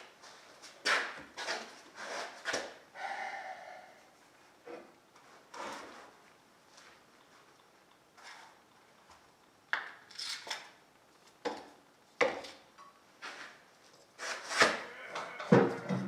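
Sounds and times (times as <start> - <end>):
parts knocking and clunking: 15.1 - 16.0.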